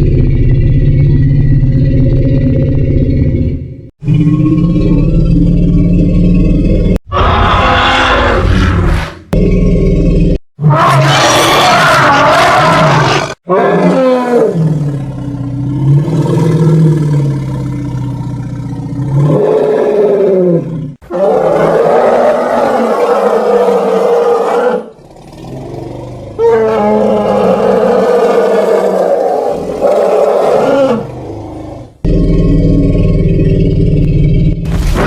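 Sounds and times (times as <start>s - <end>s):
elephants roaring: 10.6s - 35.0s.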